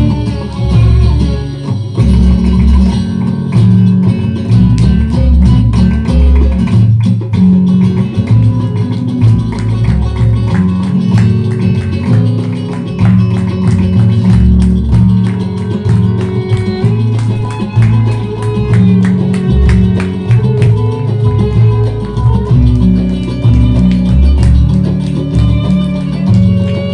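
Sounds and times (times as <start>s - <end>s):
bass line: 0.0s - 26.9s
plucked guitar: 0.0s - 26.9s
steady beat: 10.3s - 26.9s.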